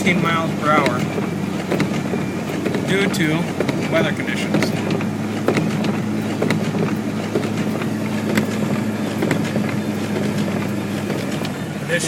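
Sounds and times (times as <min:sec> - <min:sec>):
engine drone and road noise: 0:00.0 - 0:12.0.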